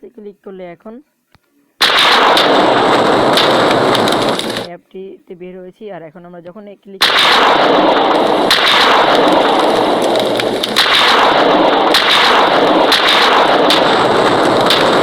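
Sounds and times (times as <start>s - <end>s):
explosion sound effects: 1.8s - 4.7s, 7.1s - 15.0s.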